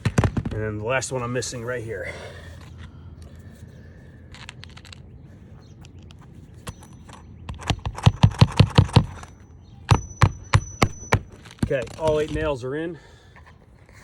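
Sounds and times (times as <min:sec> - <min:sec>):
hammer striking roofing nail: 0:07.5 - 0:09.3, 0:09.9 - 0:12.4.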